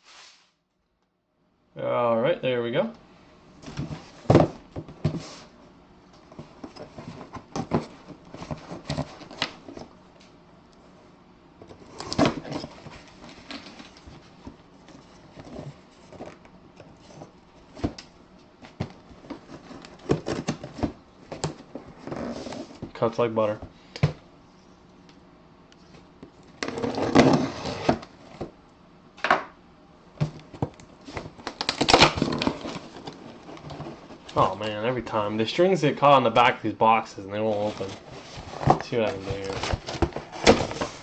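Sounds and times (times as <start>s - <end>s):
cardboard being handled: 37.5s - 41.0s.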